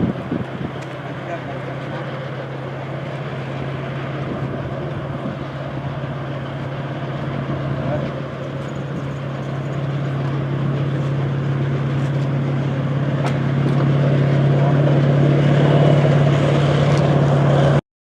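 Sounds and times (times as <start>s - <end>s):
vehicle engine humming: 0.0s - 17.8s.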